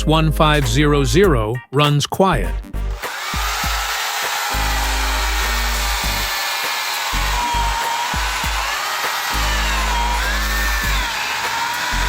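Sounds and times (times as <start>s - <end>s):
music with bass beat: 0.0s - 4.0s, 4.6s - 6.4s, 7.1s - 8.8s, 9.4s - 11.1s
electric chainsaw whirring: 2.9s - 12.0s.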